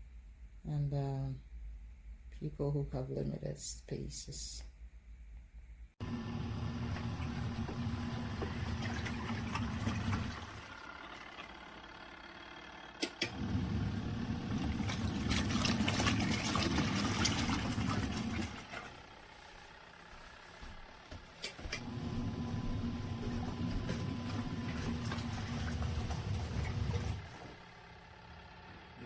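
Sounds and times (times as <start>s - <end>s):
washing machine motor running: 6.0s - 29.0s
water sloshing: 6.7s - 10.8s, 14.2s - 19.6s, 21.8s - 27.6s.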